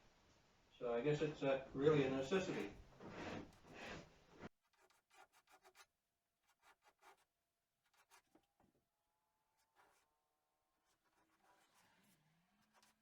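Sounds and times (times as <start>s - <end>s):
faint rubbing strokes: 2.2s - 5.9s, 9.6s - 10.1s, 10.8s - 13.0s.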